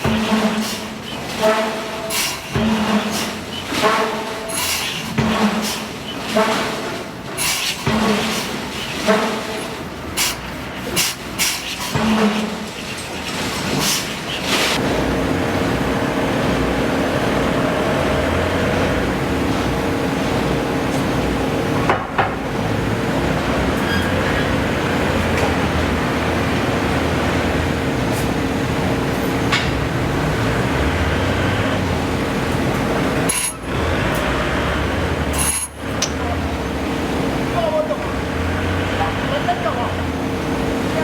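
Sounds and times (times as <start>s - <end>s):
machinery drone humming: 14.8s - 41.0s.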